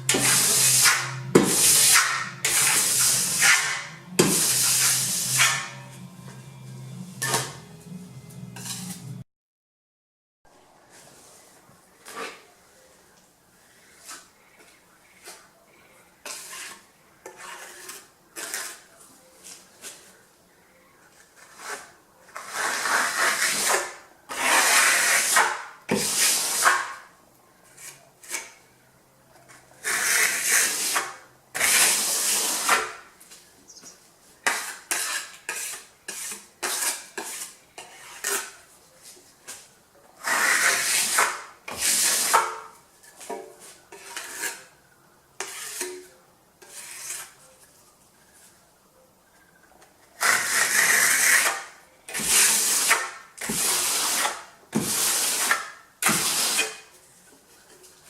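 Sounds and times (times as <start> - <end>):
trowel scraping plaster: 0.0 - 5.9, 8.6 - 9.1, 16.2 - 20.2, 21.1 - 28.7, 29.5 - 33.1, 34.4 - 44.8, 45.4 - 47.5, 50.1 - 57.0.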